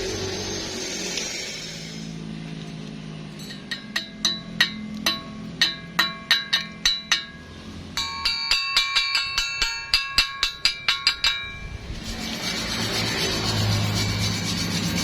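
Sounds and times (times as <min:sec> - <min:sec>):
hammer striking steel: 0:03.4 - 0:15.0.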